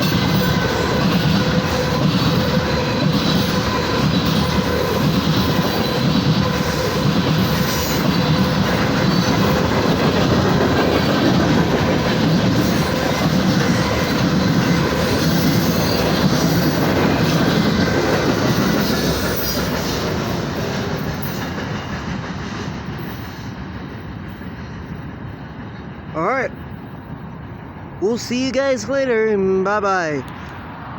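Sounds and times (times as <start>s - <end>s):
freight train wheels rumbling: 0.0s - 30.9s.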